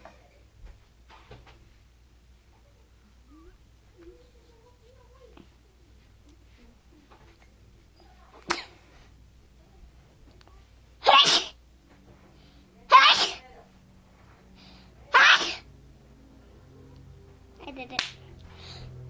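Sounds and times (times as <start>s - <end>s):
person sneezing: 11.0s - 11.6s, 12.9s - 13.4s, 15.1s - 15.7s.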